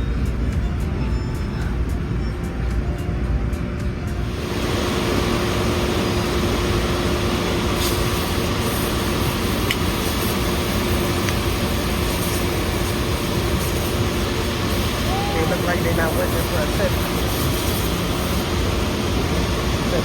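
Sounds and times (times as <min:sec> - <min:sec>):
constant low hum: 0:00.0 - 0:20.0
rush of blowing air: 0:04.2 - 0:20.0.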